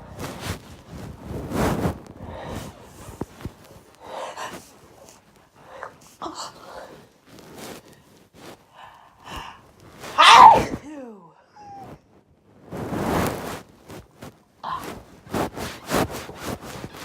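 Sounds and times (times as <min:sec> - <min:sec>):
person sneezing: 0:10.1 - 0:11.1.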